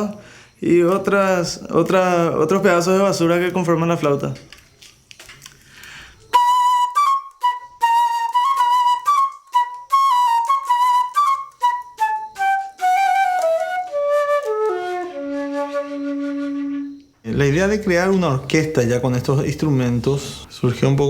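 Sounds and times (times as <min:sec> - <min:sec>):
flute playing solo: 0:06.3 - 0:17.1.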